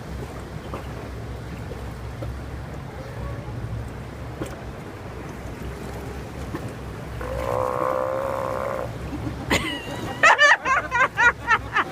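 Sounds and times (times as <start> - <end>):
sea lion belching call: 7.2 - 9.0
people laughing: 9.0 - 11.9.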